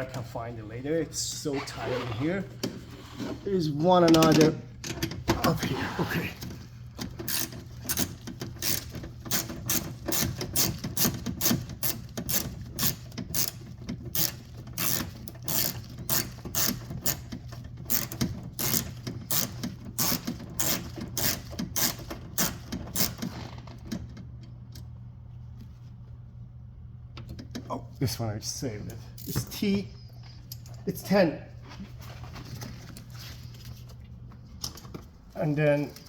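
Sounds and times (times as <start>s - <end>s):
hand ratchet clicking: 7.1s - 23.3s.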